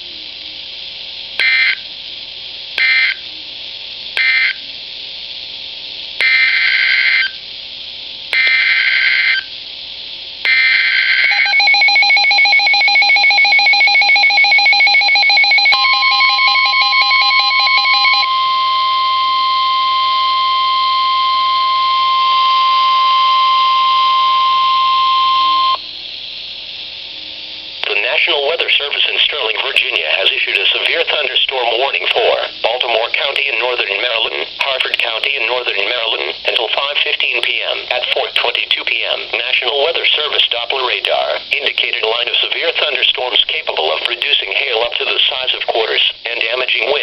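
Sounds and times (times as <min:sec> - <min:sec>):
steady warning alarm tone: 0:01.4 - 0:01.9, 0:02.8 - 0:03.2, 0:04.2 - 0:04.6, 0:06.2 - 0:07.4, 0:08.4 - 0:09.5, 0:10.5 - 0:25.9
screeching digital data bursts: 0:06.2 - 0:07.4, 0:08.4 - 0:09.5, 0:10.5 - 0:25.8
warbling two-tone attention signal: 0:10.6 - 0:25.8.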